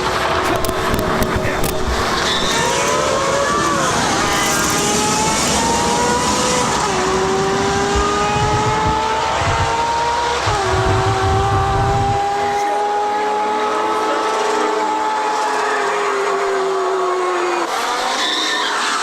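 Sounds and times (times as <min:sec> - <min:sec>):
rough rushing noise: 0:00.0 - 0:12.2
vehicle engine accelerating: 0:00.0 - 0:19.0.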